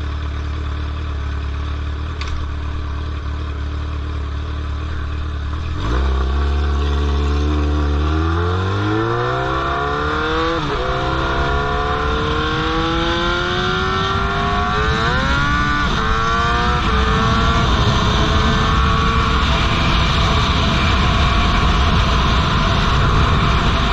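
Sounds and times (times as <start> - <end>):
motorcycle engine accelerating: 0.0 - 23.9
rushing wind noise: 5.6 - 23.9.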